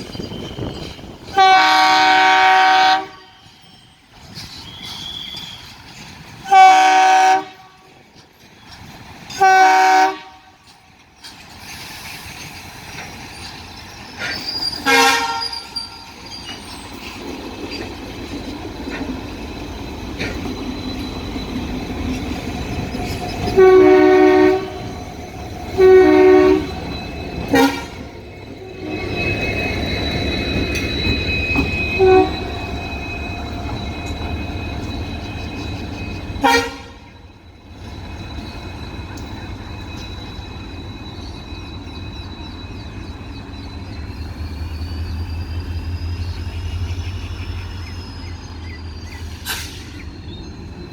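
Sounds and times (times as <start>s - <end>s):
locomotives and train rumbling: 0.0s - 50.9s
locomotive air horns: 1.3s - 3.4s, 6.4s - 7.9s, 9.3s - 10.6s, 14.8s - 16.0s, 23.5s - 25.0s, 25.7s - 29.2s, 31.6s - 32.8s, 36.4s - 37.2s.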